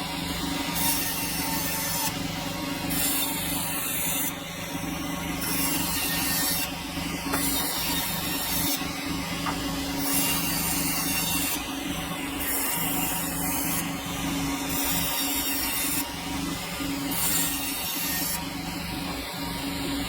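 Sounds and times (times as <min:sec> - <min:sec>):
sawmill motor hum: 0:00.0 - 0:20.0.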